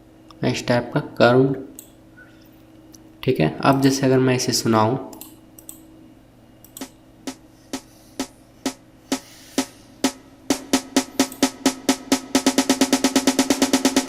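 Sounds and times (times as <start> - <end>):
snare drum roll with reverb: 7.3 - 14.0.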